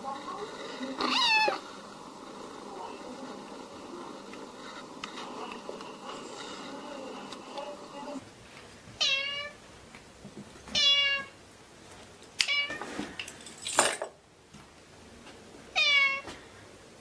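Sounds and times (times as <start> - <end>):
cat meowing: 1.0 - 1.6, 9.0 - 9.6, 10.7 - 11.3, 15.8 - 16.3.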